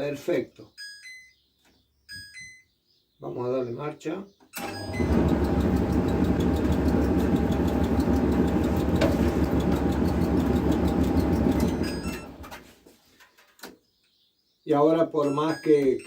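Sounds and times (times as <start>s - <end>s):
dryer click: 4.6s - 12.6s
clothes dryer humming: 4.6s - 12.7s.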